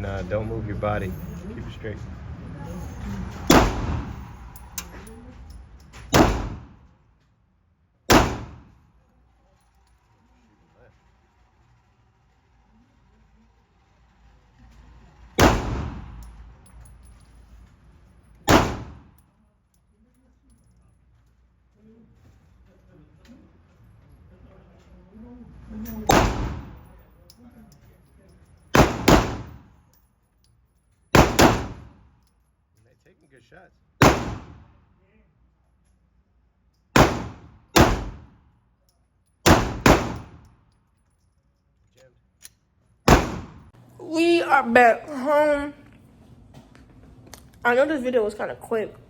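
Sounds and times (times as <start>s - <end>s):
gunshots: 3.5s - 4.2s, 6.1s - 6.8s, 8.1s - 8.8s, 15.4s - 16.2s, 18.5s - 19.1s, 26.1s - 26.8s, 28.8s - 29.6s, 31.2s - 32.0s, 34.0s - 34.7s, 37.0s - 38.3s, 39.5s - 40.4s, 43.1s - 43.7s
handgun shots: 3.5s - 4.2s, 6.1s - 6.8s, 8.1s - 8.8s, 15.4s - 16.2s, 18.5s - 19.1s, 26.0s - 26.8s, 28.7s - 29.7s, 31.1s - 32.0s, 34.0s - 34.6s, 37.0s - 38.3s, 39.4s - 40.5s, 43.1s - 43.7s.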